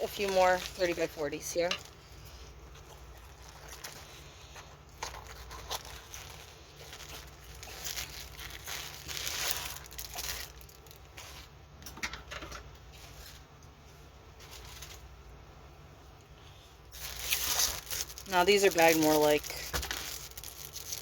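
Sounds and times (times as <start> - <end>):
plastic bags crinkling and rustling: 0.0 - 11.6, 14.4 - 15.1, 16.9 - 21.0.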